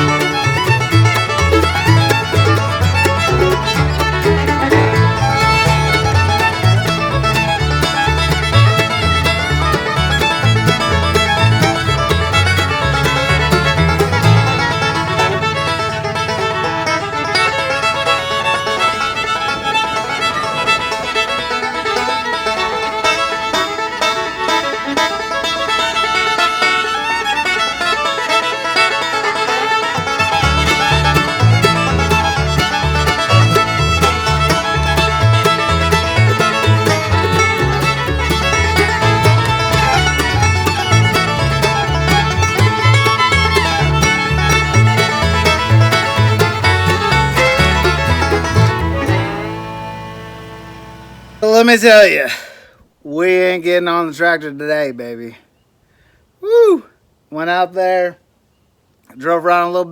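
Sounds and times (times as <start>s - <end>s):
low bass line: 0.0s - 19.6s, 29.9s - 51.6s
plucked strings: 0.0s - 51.8s
fiddle: 0.0s - 52.1s.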